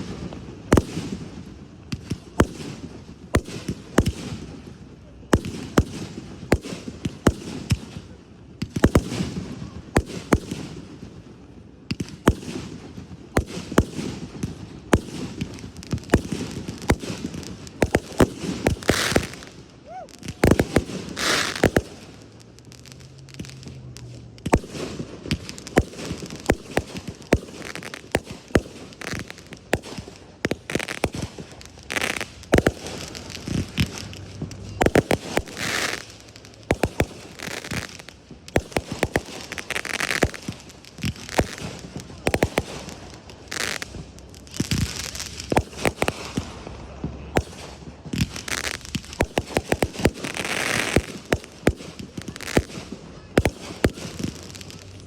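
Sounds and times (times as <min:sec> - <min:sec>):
fireworks bangs: 0:00.0 - 0:55.0
fireworks hissing: 0:15.1 - 0:55.0.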